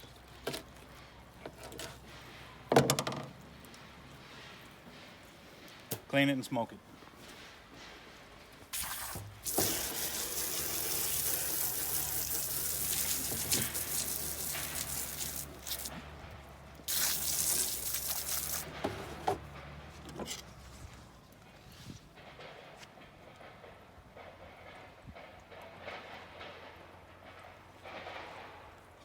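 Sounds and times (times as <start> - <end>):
handling knocks: 0.0 - 6.2
water running: 8.8 - 15.9.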